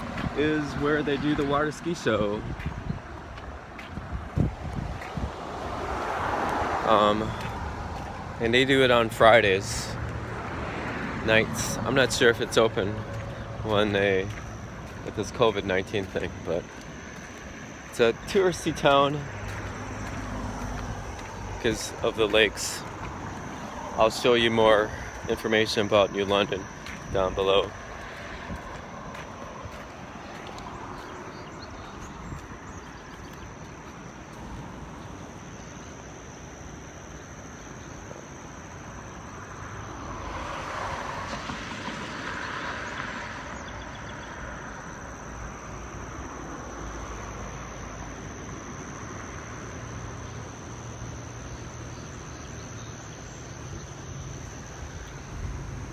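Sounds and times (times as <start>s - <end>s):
vehicle passing by: 4.0s - 33.1s, 39.7s - 44.7s
high-pitched insect trill: 4.4s - 55.9s.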